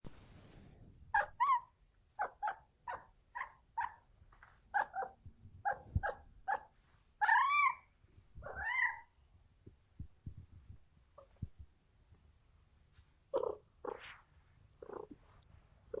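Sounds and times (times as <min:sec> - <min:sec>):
cat meowing: 0:07.2 - 0:09.1.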